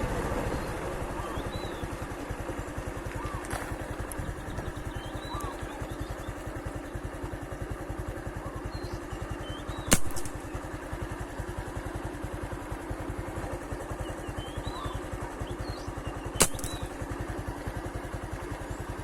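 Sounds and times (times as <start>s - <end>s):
small engine running: 0.0s - 19.0s
faint bird chirps: 0.4s - 1.9s, 3.2s - 7.0s, 8.4s - 10.6s, 13.8s - 17.0s
sharp crack: 9.9s - 10.6s, 16.4s - 17.2s.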